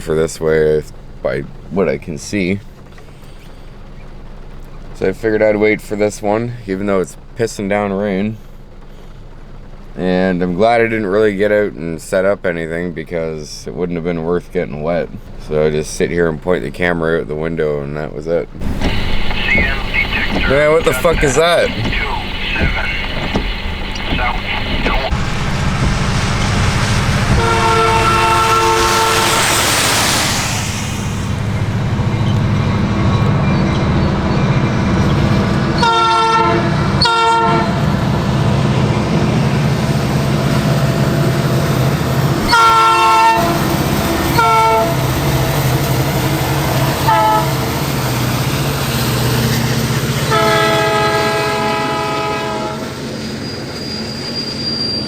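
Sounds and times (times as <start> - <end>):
train rumbling past: 18.5 - 55.0
locomotive air horn blasts: 18.6 - 34.6, 35.7 - 38.0, 42.4 - 45.6, 47.0 - 47.9, 50.2 - 53.0.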